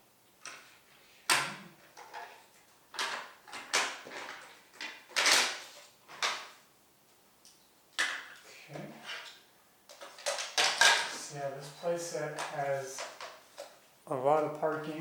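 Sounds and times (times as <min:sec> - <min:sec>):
plastic scraping rattle: 0:01.9 - 0:06.6, 0:09.0 - 0:11.3
plastic toy pieces clacking: 0:02.9 - 0:06.5, 0:09.1 - 0:11.2.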